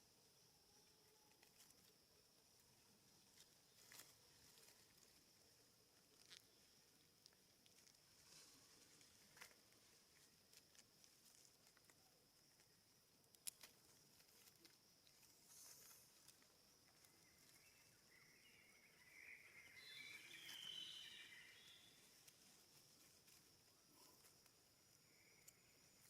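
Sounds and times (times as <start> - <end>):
faint clicks: 13.3 - 17.1
faint high chirping: 13.9 - 26.0.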